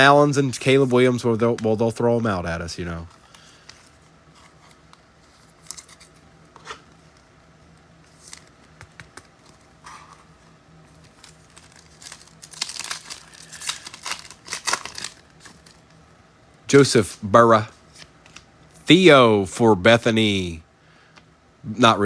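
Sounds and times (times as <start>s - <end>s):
wrapper tearing and crinkling: 11.0s - 15.8s.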